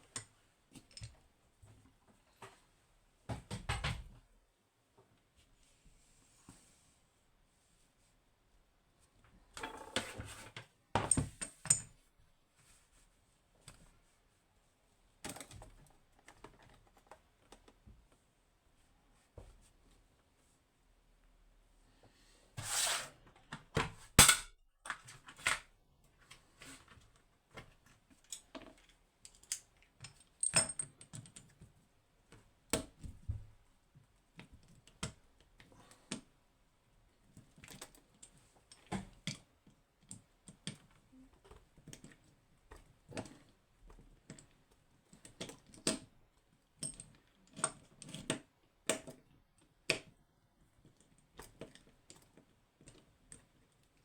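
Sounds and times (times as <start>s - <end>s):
short scrape: 22.6s - 23.2s.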